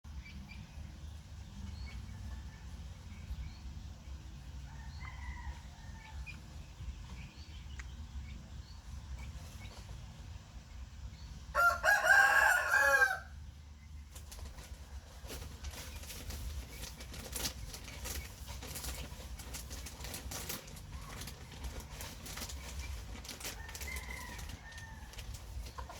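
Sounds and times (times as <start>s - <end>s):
rooster crowing: 11.5s - 13.4s.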